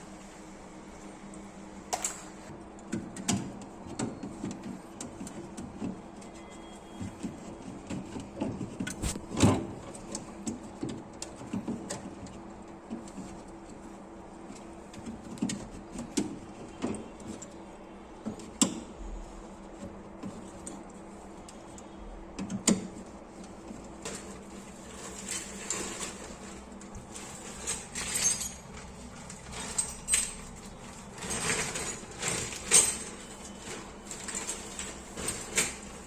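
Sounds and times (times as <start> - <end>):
metallic rattles of tools handled: 24.0 - 36.0.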